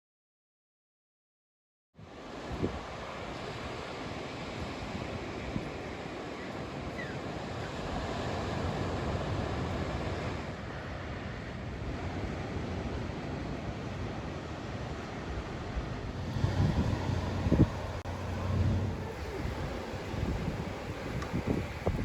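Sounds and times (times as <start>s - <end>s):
wind buffeting microphone: 2.0s - 10.5s, 15.2s - 22.0s
ocean surf washing: 2.0s - 22.0s.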